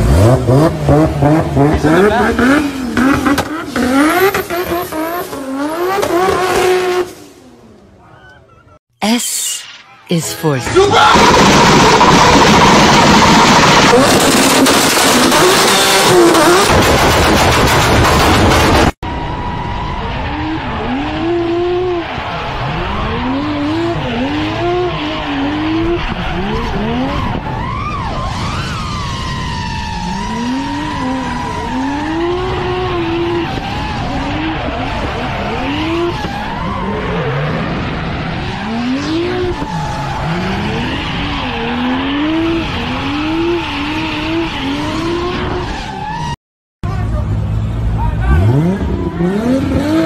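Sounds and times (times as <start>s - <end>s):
car engine revving hard: 0.0s - 7.2s, 11.1s - 19.0s, 48.2s - 50.0s
tyres squealing and skidding: 10.6s - 16.6s, 19.0s - 46.4s.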